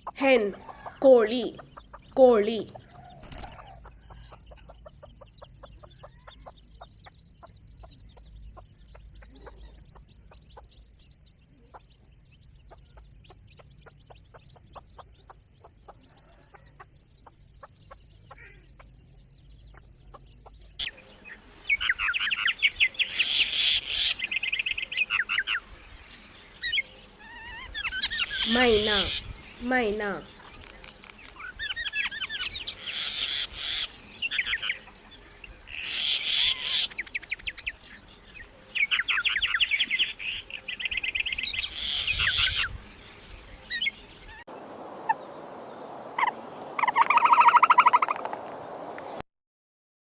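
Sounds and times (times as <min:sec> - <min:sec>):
fast high chicken calls: 0:00.0 - 0:04.8, 0:46.2 - 0:48.3
hen clucking: 0:00.0 - 0:11.0, 0:28.4 - 0:30.3.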